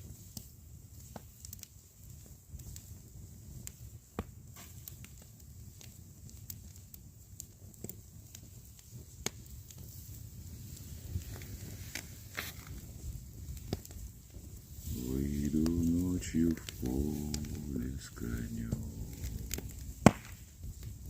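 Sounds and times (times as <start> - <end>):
campfire crackling: 0.0 - 21.0
low rumble: 14.8 - 21.0.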